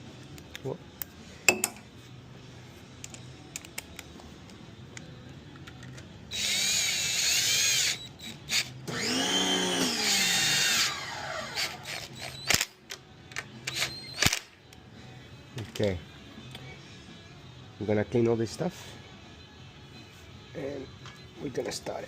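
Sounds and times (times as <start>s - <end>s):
tools clicking and knocking: 1.5s - 1.9s, 3.0s - 6.1s
power drill motor: 6.3s - 12.6s.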